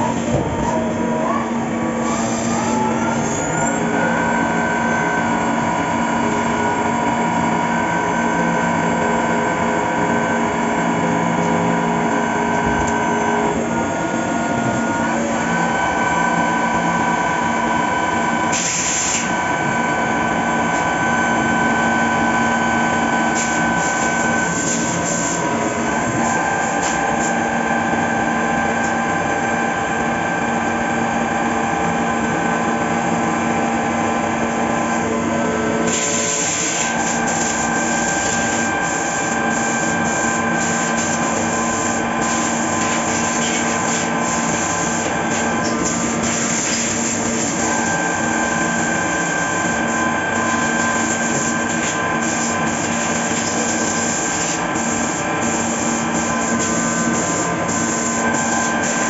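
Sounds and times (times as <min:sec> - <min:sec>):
milling machine cutting metal: 0:35.1 - 0:59.0.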